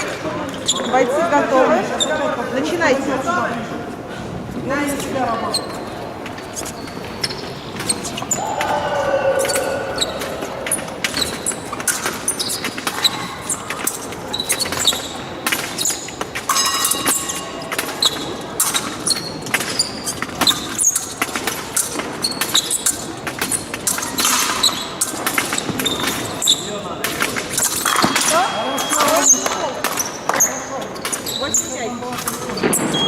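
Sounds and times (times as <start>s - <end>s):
shoes squeaking on floor: 0.0s - 2.8s, 4.6s - 33.0s
clicks and knocks of footsteps: 4.9s - 8.8s.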